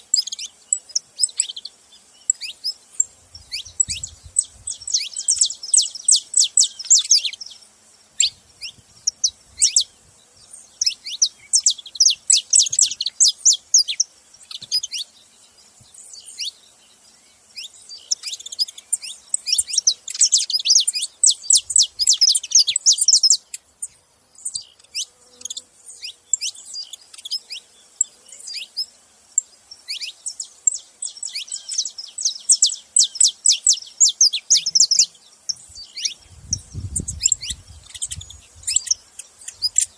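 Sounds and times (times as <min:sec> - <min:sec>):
finches singing: 0:00.0 - 0:39.9.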